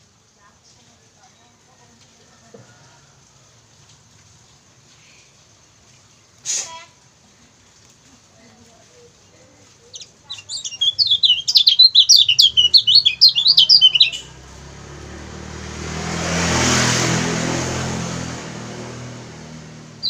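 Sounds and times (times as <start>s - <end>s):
bird twittering high chirps: 9.9s - 14.6s.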